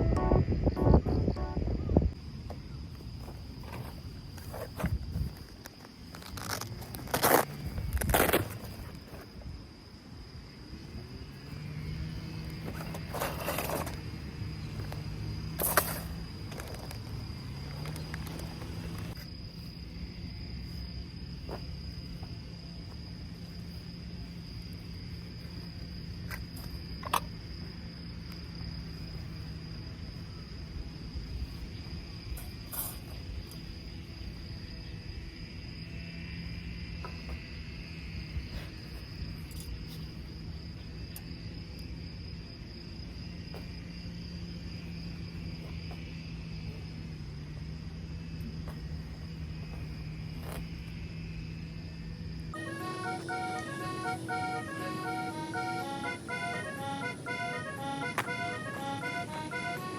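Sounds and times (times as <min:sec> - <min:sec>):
low steady hum: 0:00.0 - 0:02.8
insects trilling: 0:00.0 - 0:59.9
rustles and clicks: 0:12.5 - 0:14.2.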